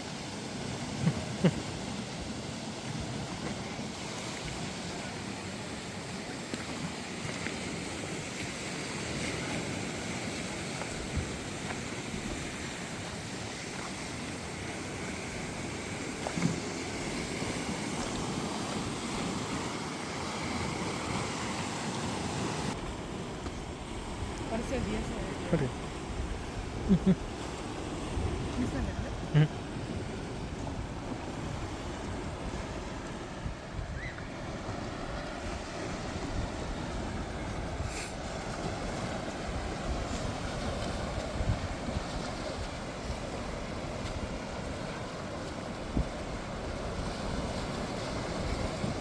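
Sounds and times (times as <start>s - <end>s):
rushing water: 0.0s - 49.0s
surf: 0.0s - 49.0s
wind buffeting microphone: 22.5s - 49.0s.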